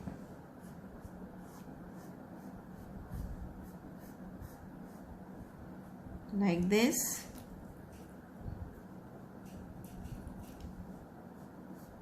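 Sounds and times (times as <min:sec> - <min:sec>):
pencil scratching on paper: 0:00.6 - 0:05.1, 0:09.5 - 0:12.0.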